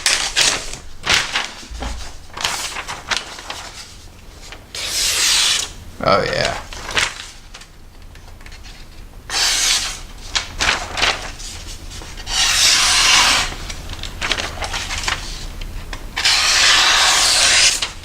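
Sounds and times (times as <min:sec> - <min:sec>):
knife slicing through paper: 0:16.2 - 0:17.9.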